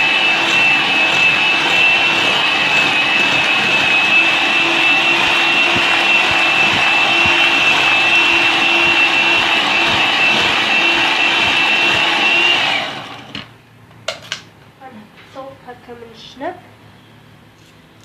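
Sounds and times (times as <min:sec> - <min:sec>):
electric mixer whining: 0:00.0 - 0:13.6.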